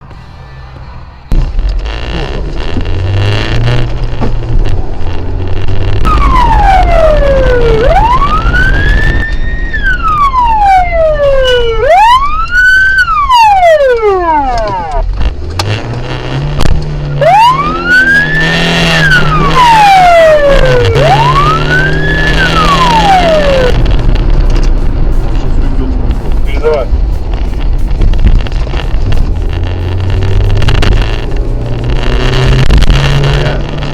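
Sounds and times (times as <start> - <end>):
car engine running hard: 0.0 - 33.9
road noise: 0.0 - 33.9
police siren wailing: 6.0 - 15.1, 17.1 - 27.4.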